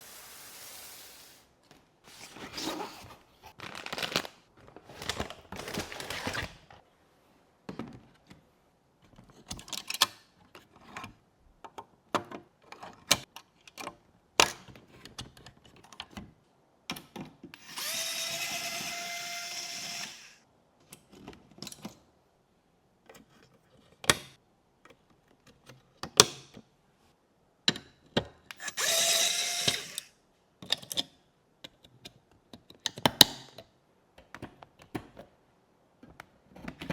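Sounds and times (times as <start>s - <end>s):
electric screwdriver running: 17.6s - 20.4s, 28.6s - 30.1s.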